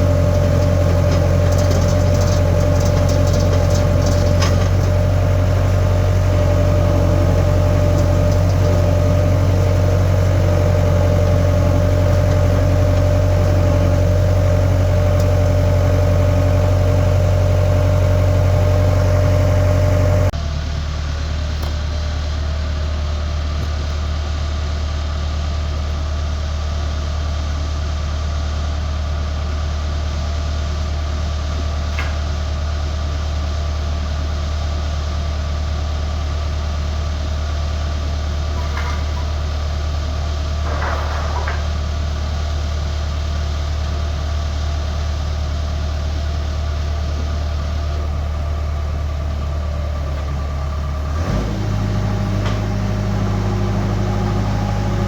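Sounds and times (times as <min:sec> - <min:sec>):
skid steer engine humming: 0:00.0 - 0:55.0.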